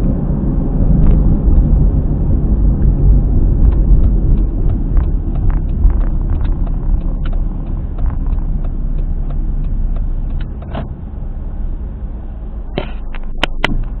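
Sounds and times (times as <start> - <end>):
noise from rear tyre: 0.0 - 14.0
road and tyre rumble: 0.0 - 14.0
clicks and ticks: 3.6 - 10.9, 12.8 - 14.0.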